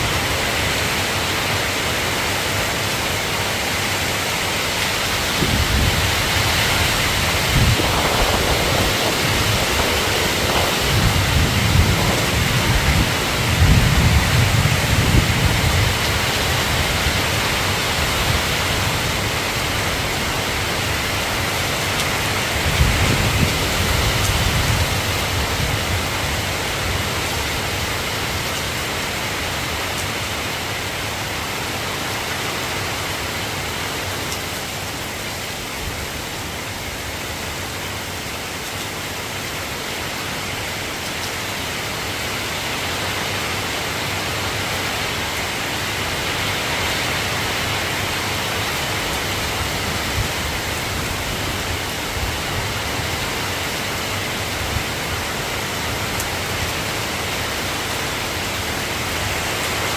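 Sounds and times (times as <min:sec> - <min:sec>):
soft rain hissing: 0:00.0 - 0:33.6.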